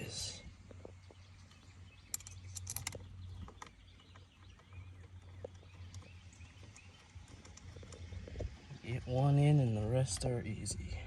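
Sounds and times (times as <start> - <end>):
faint bird chirps: 0.0 - 9.5
clicks of small metal parts: 2.1 - 3.0.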